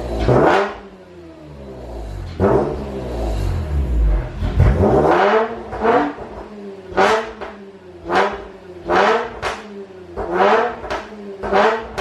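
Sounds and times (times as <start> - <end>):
car engine revving: 0.0 - 12.0
exhaust cracks: 2.2 - 7.6.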